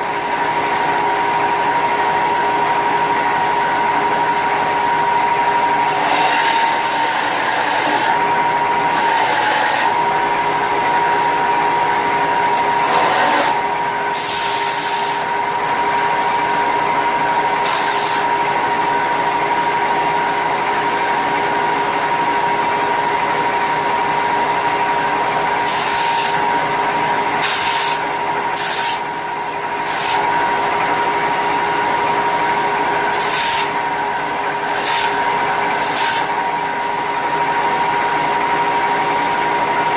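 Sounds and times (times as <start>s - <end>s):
electric power tool whining: 5.3s - 11.0s, 11.7s - 15.4s.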